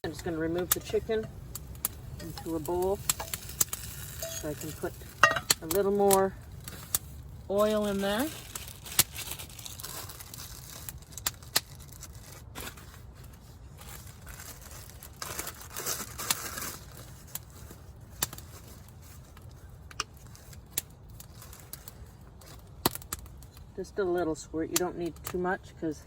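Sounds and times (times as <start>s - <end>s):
crinkly rustling: 0.0s - 25.9s
utensil scraping a cast iron pan: 0.1s - 6.9s.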